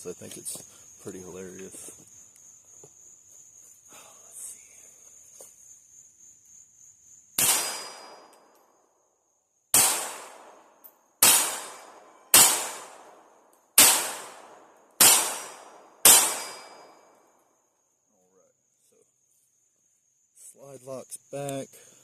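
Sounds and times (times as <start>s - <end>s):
pistol shots: 7.4s - 8.5s, 9.7s - 17.1s.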